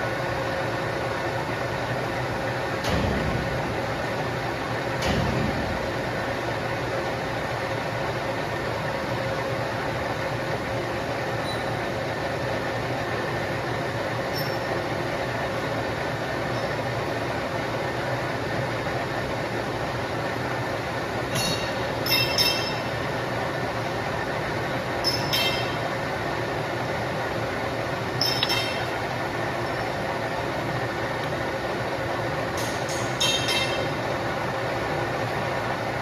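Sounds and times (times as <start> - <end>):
loud metal clanks: 28.2 - 29.0.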